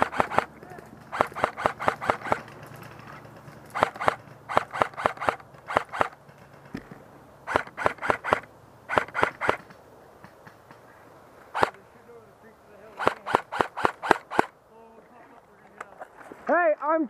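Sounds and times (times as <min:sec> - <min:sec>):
airsoft gun firing: 0:00.0 - 0:00.5, 0:01.1 - 0:02.5, 0:03.7 - 0:06.2, 0:07.4 - 0:09.7, 0:11.5 - 0:11.8, 0:13.0 - 0:14.6.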